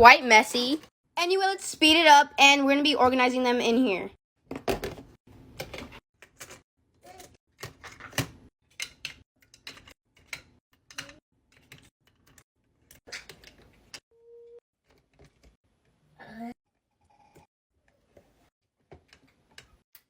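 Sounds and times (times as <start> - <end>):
plastic toys clicking and clattering: 5.6 - 14.0.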